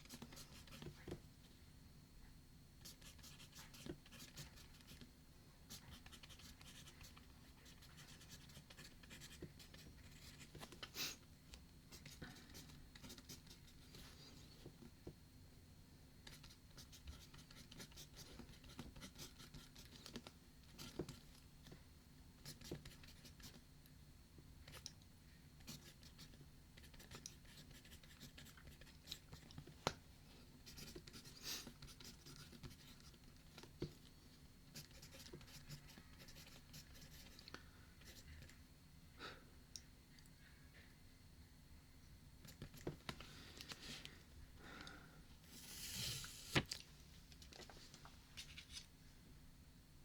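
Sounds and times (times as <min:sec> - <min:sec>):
pen scratching on paper: 0:05.8 - 0:10.5, 0:34.8 - 0:37.4.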